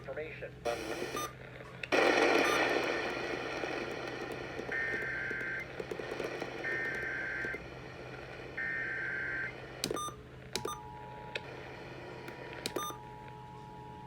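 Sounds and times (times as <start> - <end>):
radio hiss and low hum: 0.0 - 9.8.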